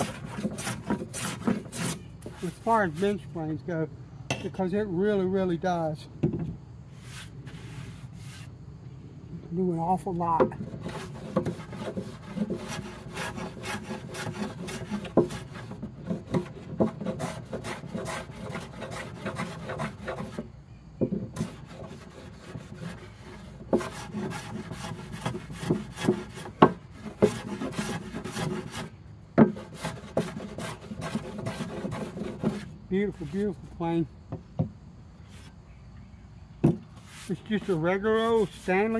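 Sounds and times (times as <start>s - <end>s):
hand plane shaving wood: 0.0s - 3.2s, 10.4s - 20.5s, 21.3s - 33.6s, 37.0s - 38.9s.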